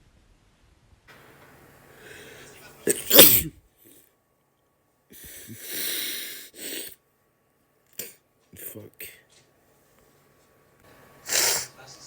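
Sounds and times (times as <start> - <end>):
noisy breathing: 1.1 - 4.0, 5.1 - 7.0, 11.2 - 12.0
boy sneezing: 2.9 - 3.5, 5.2 - 7.0, 11.3 - 11.7.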